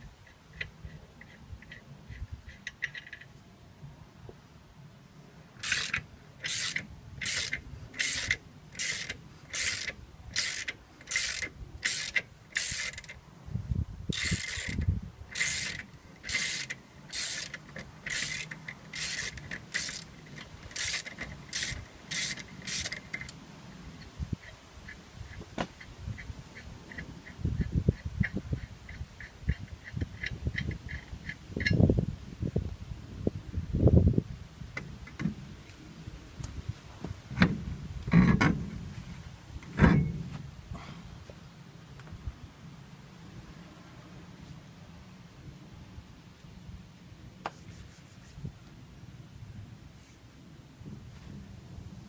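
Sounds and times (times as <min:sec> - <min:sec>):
ratchet wrench clicking: 0:05.6 - 0:13.2, 0:14.1 - 0:23.4.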